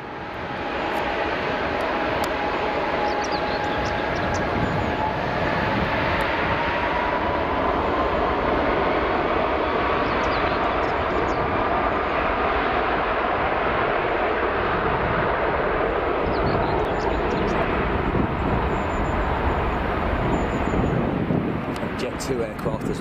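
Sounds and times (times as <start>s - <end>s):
jet engine whine rising: 0.0s - 23.0s
jet engines rushing: 0.0s - 23.0s.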